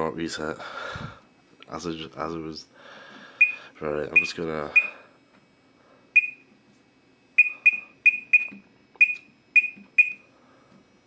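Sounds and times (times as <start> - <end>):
keypad beeps: 3.4 - 3.6, 4.2 - 5.0, 6.2 - 6.4, 7.4 - 10.2.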